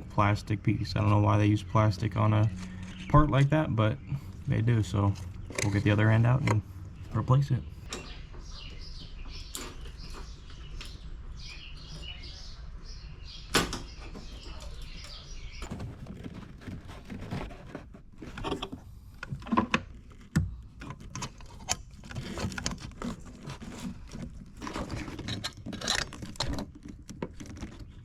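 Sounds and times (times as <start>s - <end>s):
hoses wiggled on connector: 15.6s - 28.0s.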